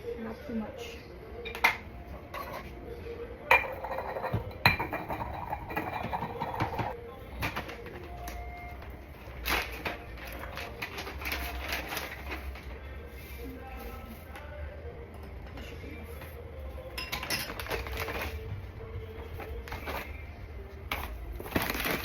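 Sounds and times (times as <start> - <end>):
dishes and utensils clattering: 1.4 - 2.8, 3.5 - 8.0, 15.5 - 18.5.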